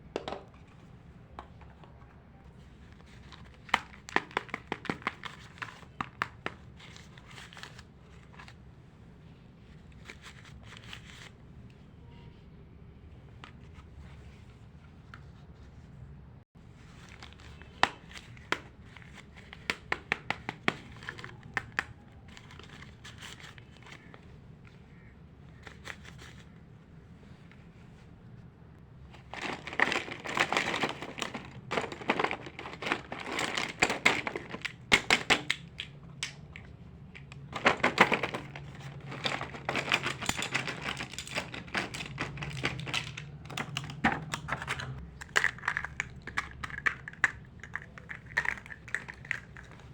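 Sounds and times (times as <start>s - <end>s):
plastic packaging crinkling: 29.0s - 49.9s.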